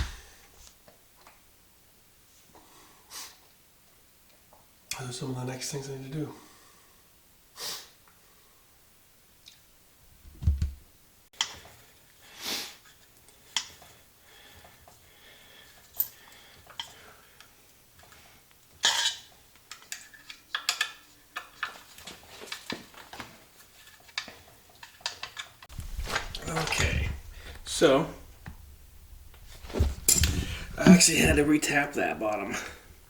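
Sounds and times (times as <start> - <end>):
low thump: 10.2 - 10.8
metal tools clinking and knocking: 29.7 - 30.7.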